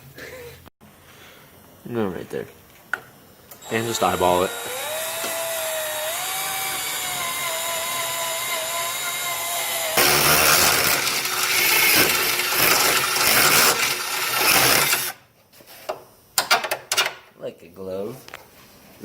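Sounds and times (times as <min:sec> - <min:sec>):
power drill grinding into metal: 0:03.6 - 0:15.2.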